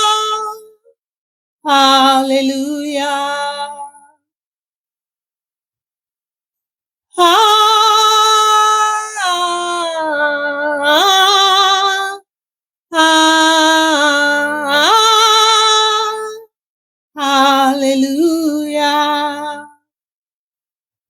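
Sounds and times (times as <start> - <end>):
woman singing unaccompanied: 0.0 - 1.0, 1.6 - 4.3, 7.1 - 12.3, 12.9 - 16.5, 17.2 - 19.9.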